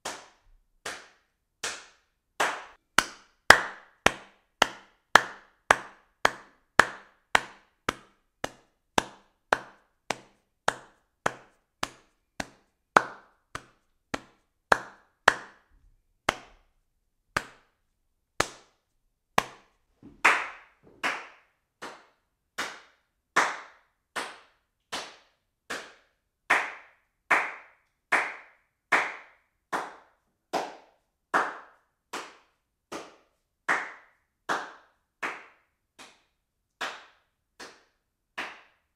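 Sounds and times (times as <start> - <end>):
hand claps: 0.0 - 17.8, 18.4 - 38.9.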